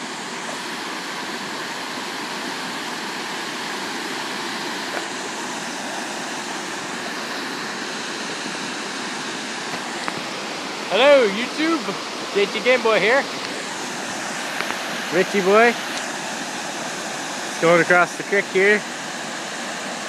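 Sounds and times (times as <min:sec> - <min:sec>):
waterfall pouring: 0:00.0 - 0:20.0.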